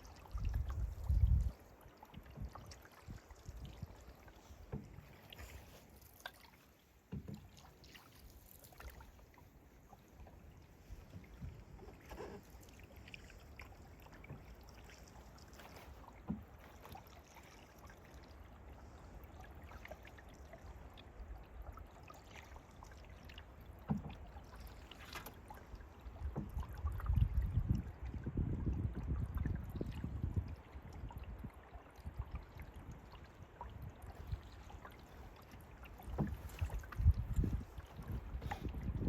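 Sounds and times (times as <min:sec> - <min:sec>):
wind rumble on microphone: 0:00.0 - 0:04.2, 0:25.6 - 0:39.0
canoe paddle strokes: 0:00.0 - 0:28.1, 0:30.8 - 0:39.0
water dripping off paddle: 0:00.0 - 0:28.1, 0:29.4 - 0:39.0.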